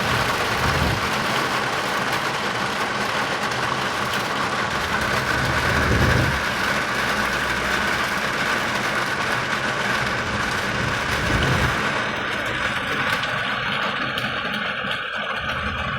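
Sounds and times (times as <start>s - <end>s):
low rumbles: 0.0s - 1.3s, 4.8s - 8.2s, 9.0s - 13.4s
heavy rain hissing: 0.0s - 14.2s.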